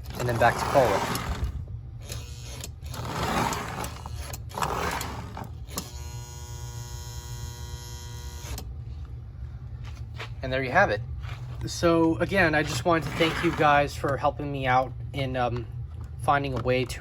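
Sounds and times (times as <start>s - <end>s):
toy train motor buzzing hum: 2.0s - 8.6s.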